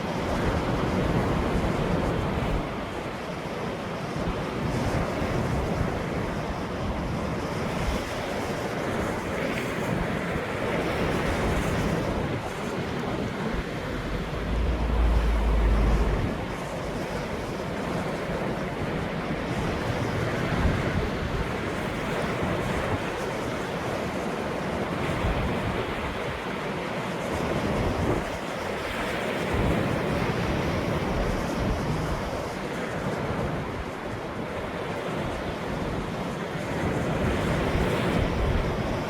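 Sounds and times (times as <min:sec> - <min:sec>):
ocean waves breaking: 0:11.2 - 0:20.0.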